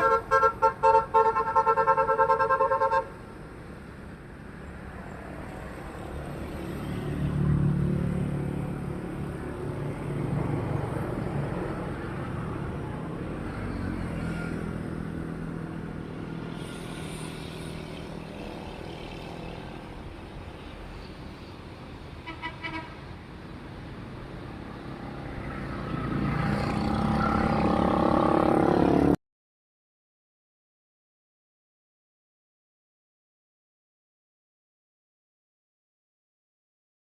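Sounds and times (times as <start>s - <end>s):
pulsing horn: 0.0s - 3.1s
vehicles passing: 0.0s - 29.2s.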